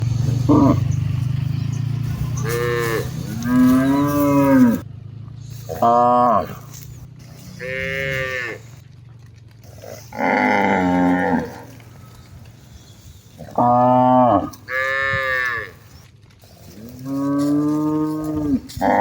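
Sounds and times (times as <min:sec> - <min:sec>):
cattle mooing: 0:00.0 - 0:04.8, 0:05.5 - 0:08.9, 0:09.6 - 0:12.2, 0:13.4 - 0:15.9, 0:16.5 - 0:19.0.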